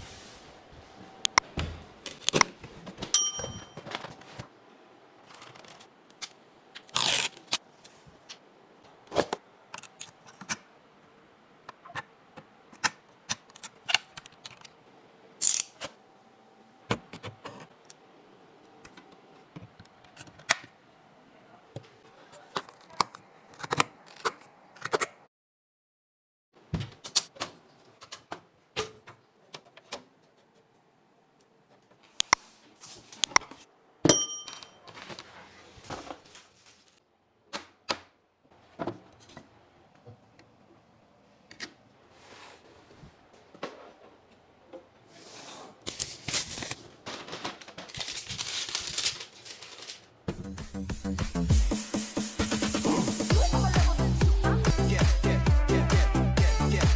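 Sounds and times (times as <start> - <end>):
short ringing ping: 3.2 - 3.8, 34.1 - 34.8.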